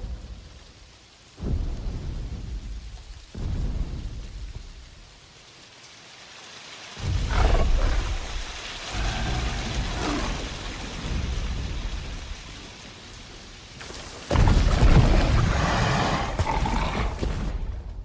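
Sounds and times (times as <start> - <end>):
thunder rumbling: 0.0 - 5.4, 7.0 - 18.0
rain falling steadily: 0.0 - 18.0.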